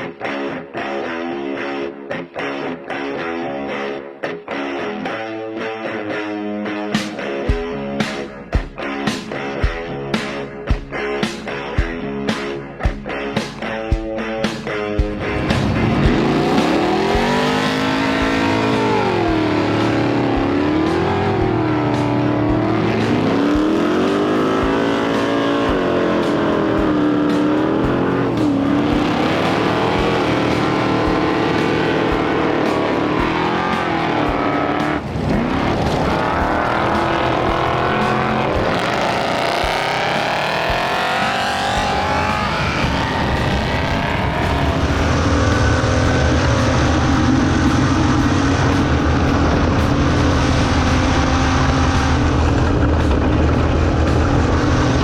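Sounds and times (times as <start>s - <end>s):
engine revving hard: 15.2s - 55.0s.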